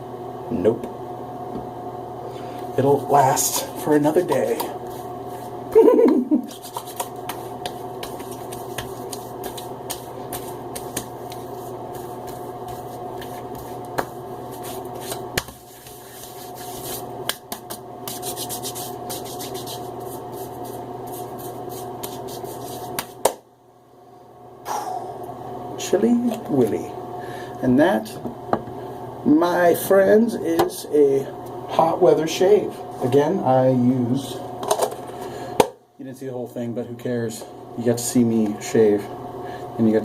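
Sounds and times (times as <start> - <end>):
steady hum: 0.0 - 40.0
hands rubbing skin: 6.4 - 23.4.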